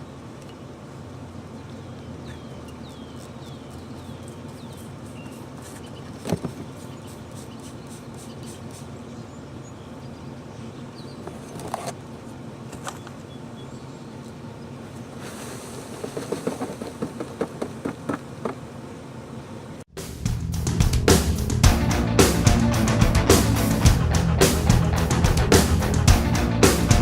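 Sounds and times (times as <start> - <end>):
bird chirps: 1.5 - 11.5.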